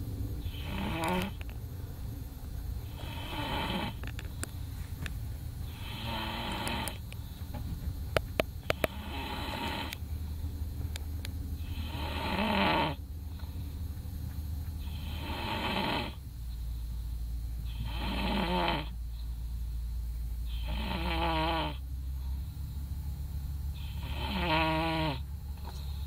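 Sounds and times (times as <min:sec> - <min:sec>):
man snoring: 0:00.4 - 0:01.4, 0:02.8 - 0:04.0, 0:05.6 - 0:07.0, 0:08.7 - 0:10.0, 0:11.6 - 0:13.0, 0:14.8 - 0:16.2, 0:17.7 - 0:19.0, 0:20.5 - 0:21.9, 0:23.8 - 0:25.3
sharp clicks: 0:00.7 - 0:01.6, 0:06.5 - 0:10.0.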